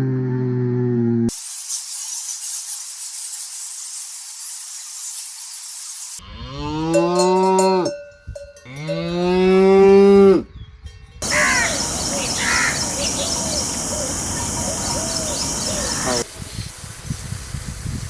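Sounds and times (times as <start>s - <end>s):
steady hiss: 1.3s - 6.2s, 11.2s - 18.0s
cow mooing: 6.2s - 7.9s, 8.7s - 10.5s.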